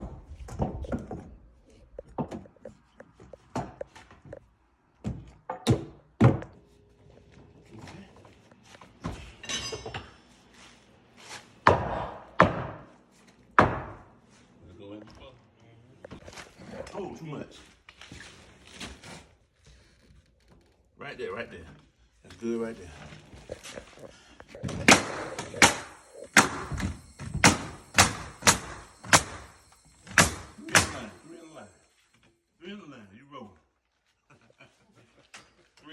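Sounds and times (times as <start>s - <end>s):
nails hammered into floor: 24.6s - 31.2s.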